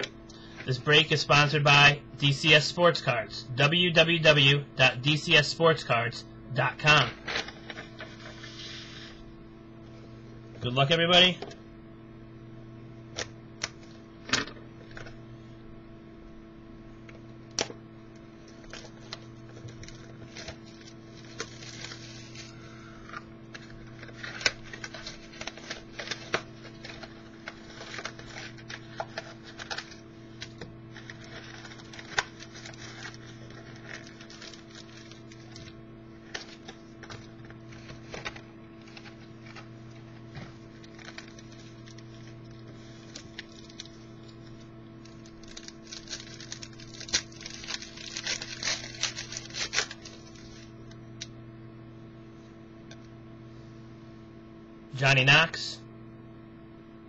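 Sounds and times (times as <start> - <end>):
steady electrical hum: 0.0 - 57.0
wrapper crinkling: 18.5 - 22.6, 23.5 - 39.6, 40.6 - 50.7.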